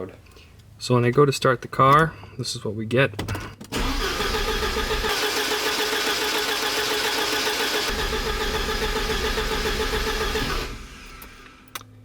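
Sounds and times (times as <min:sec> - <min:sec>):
starter motor cranking engine: 0:03.7 - 0:11.6.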